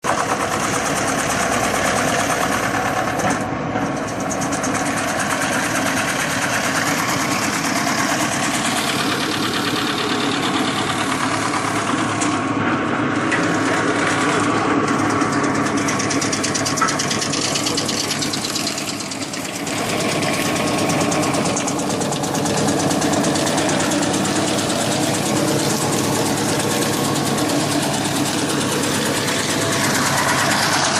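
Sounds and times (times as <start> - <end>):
wood chipper running: 0.0 - 30.9.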